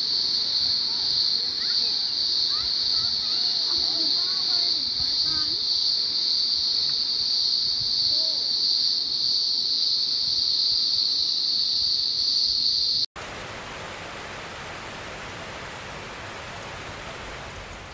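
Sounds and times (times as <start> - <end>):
high-pitched hiss: 0.0 - 13.1
waterfall rushing: 13.2 - 17.9.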